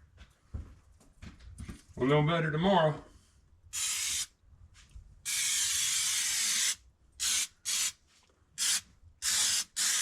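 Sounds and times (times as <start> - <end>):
aerosol can spraying: 3.8 - 4.3, 5.3 - 8.0, 8.6 - 10.0.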